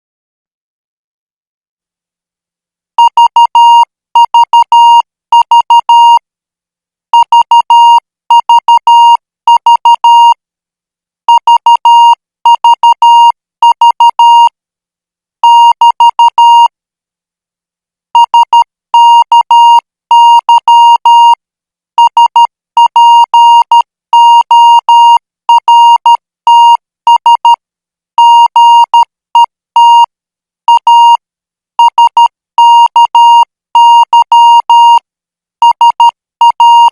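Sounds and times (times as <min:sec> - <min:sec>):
morse code beeps: 0:11.4 - 0:14.5, 0:22.0 - 0:27.6, 0:31.8 - 0:35.0, 0:35.6 - 0:36.9.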